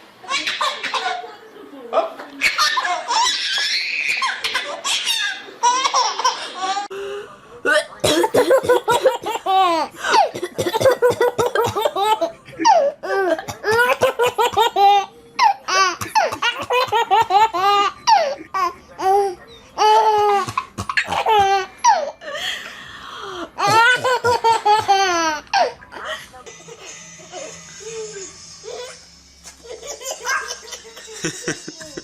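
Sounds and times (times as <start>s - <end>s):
baby belly laughing: 23.6s - 26.0s.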